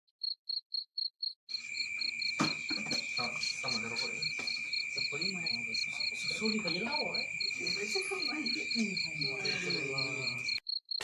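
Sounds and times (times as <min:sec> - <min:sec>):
insect chirping: 0:00.2 - 0:11.0
faint voices: 0:02.5 - 0:10.6.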